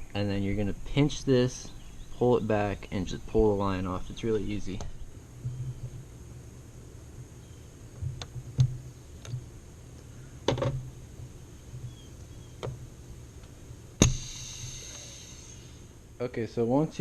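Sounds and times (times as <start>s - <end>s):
car parts clicking and knocking: 10.4s - 10.9s
sharp ringing knock: 14.0s - 15.0s.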